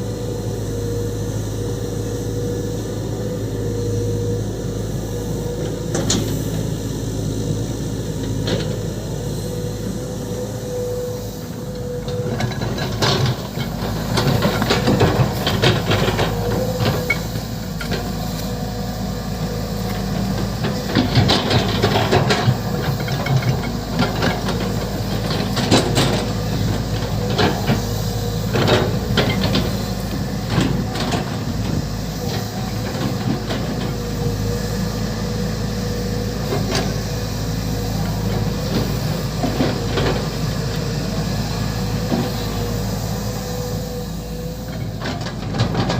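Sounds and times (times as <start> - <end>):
excavator engine droning: 0.0 - 45.9.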